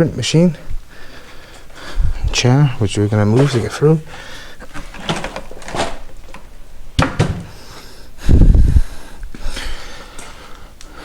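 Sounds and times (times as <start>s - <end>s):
chair knocking: 7.0s - 7.6s.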